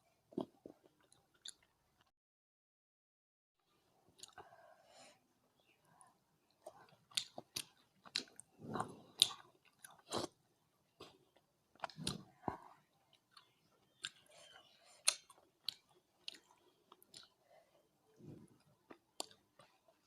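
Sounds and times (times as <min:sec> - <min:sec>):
person chewing food: 0:00.3 - 0:02.1, 0:04.2 - 0:04.6, 0:06.5 - 0:10.4, 0:11.0 - 0:17.4, 0:18.2 - 0:20.0.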